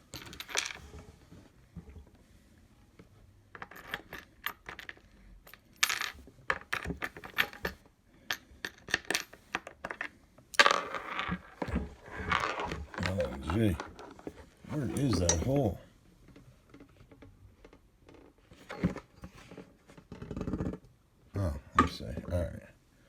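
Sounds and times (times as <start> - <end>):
rustling handling noise: 9.2 - 17.2.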